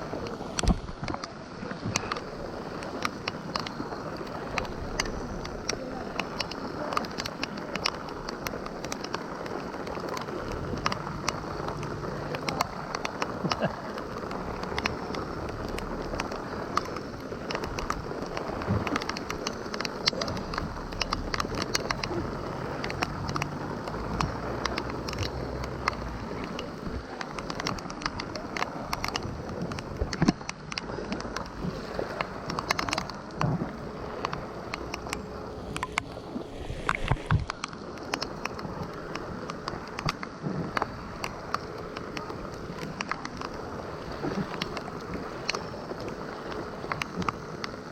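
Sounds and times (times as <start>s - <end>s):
hiss of water and rain: 0.0s - 47.9s
sharp ticks: 0.0s - 47.9s
low rumble: 4.1s - 6.8s, 33.5s - 37.5s.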